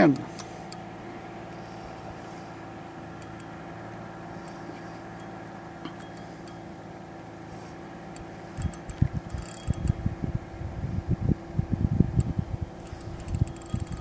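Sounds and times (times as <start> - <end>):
boat motor humming: 0.0 - 14.0
faint ticks: 3.2 - 3.6
wind buffeting microphone: 8.5 - 14.0.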